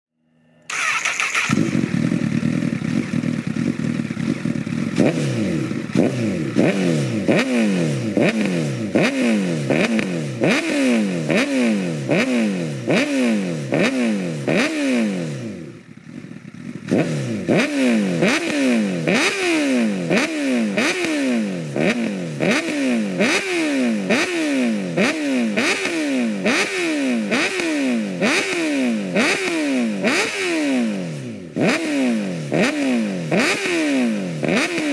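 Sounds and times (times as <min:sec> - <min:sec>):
motorcycle engine revving: 0:00.4 - 0:34.9.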